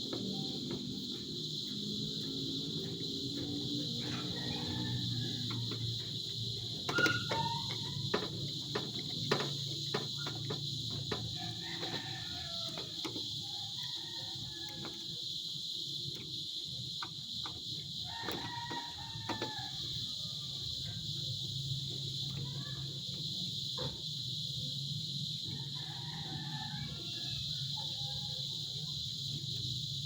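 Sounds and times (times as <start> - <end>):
insect chirring: 0.0 - 30.0
sharp clicks and knocks: 5.4 - 12.0.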